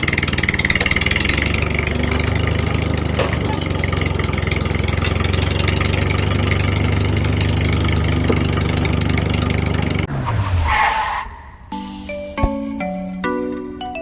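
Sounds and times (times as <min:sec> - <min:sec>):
small tractor engine running: 0:00.0 - 0:10.1.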